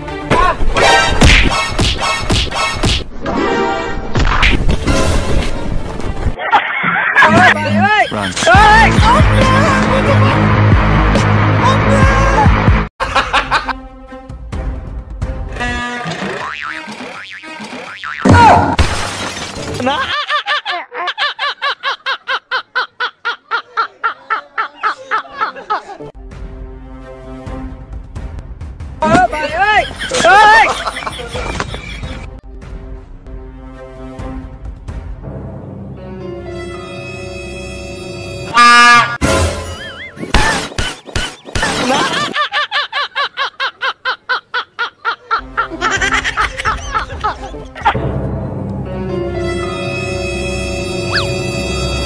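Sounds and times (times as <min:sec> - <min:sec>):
music: 0:00.0 - 0:06.4, 0:07.2 - 0:18.6, 0:25.9 - 0:40.5, 0:45.4 - 0:52.0
high-pitched laughter: 0:19.8 - 0:26.0, 0:39.6 - 0:48.0.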